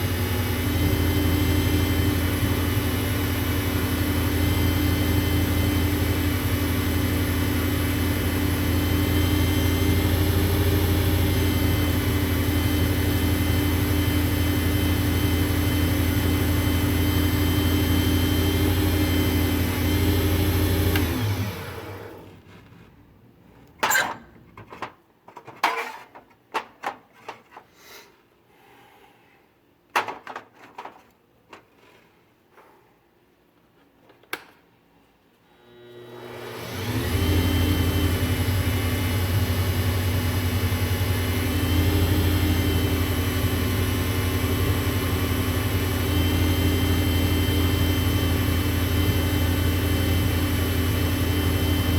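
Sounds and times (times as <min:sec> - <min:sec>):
lathe motor running: 0:00.0 - 0:22.4, 0:35.7 - 0:51.9.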